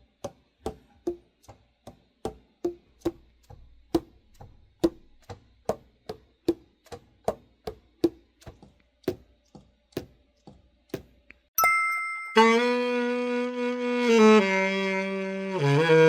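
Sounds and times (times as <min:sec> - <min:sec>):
sustained saxophone note: 0:12.4 - 0:16.0.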